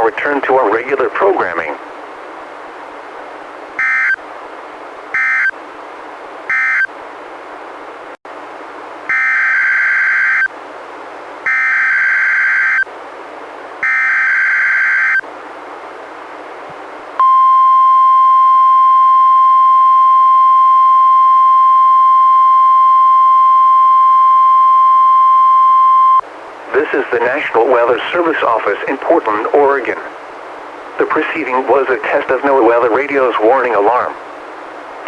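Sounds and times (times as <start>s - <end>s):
raspy buzzing data bursts: 3.8s - 4.2s, 5.1s - 5.5s, 6.5s - 6.9s, 9.1s - 10.5s, 11.5s - 12.9s, 13.8s - 15.2s
steady alarm tone: 3.8s - 4.2s, 5.2s - 5.5s, 6.5s - 6.9s, 9.1s - 10.5s, 11.5s - 12.9s, 13.8s - 15.2s.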